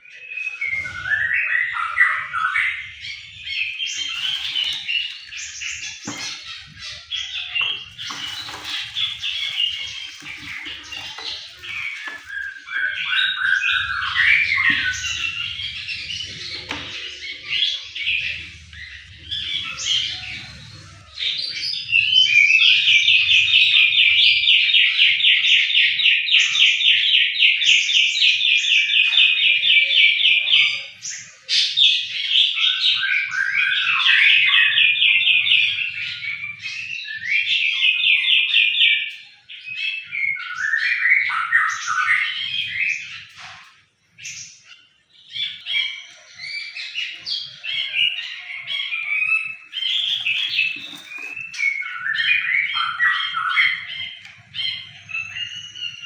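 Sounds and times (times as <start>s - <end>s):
songbirds chirping: 0.0s - 56.0s
bird trilling rapidly: 3.4s - 24.0s.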